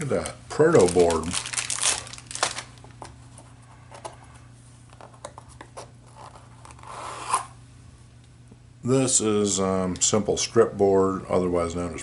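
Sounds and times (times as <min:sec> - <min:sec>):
plastic bag rustling: 0:00.0 - 0:03.1.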